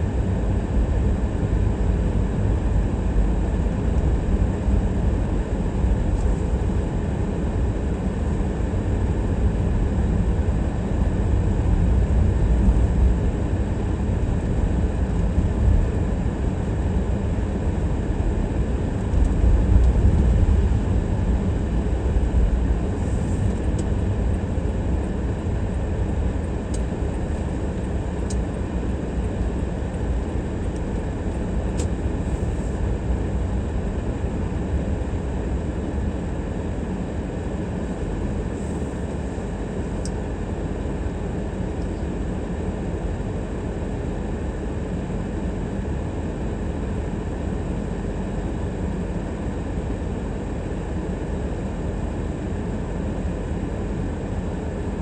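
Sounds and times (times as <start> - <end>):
car driving road noise: 0.0 - 37.1.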